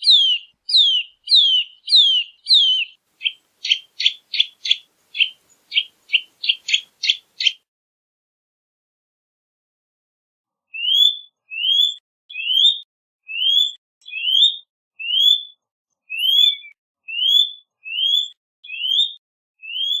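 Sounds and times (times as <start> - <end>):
bird calling rising note: 0.0 - 7.6.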